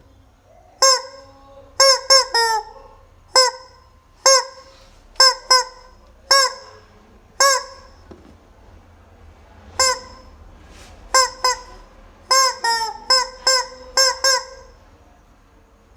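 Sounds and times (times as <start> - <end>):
rubber chicken squawking: 0.7 - 8.0, 9.8 - 10.4, 11.0 - 14.8.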